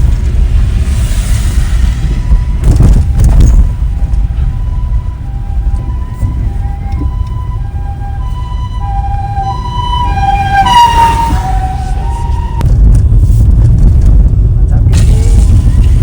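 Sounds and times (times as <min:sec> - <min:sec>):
low rumble of road traffic: 0:00.0 - 0:16.0
two-tone ambulance siren: 0:02.0 - 0:12.6.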